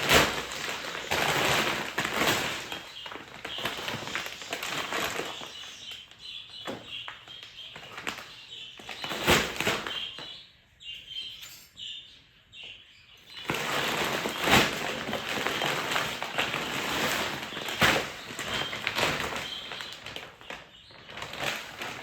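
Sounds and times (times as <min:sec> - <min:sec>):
loud steady rustling: 0:00.0 - 0:05.9, 0:13.4 - 0:22.0
small birds chirping: 0:00.0 - 0:22.0.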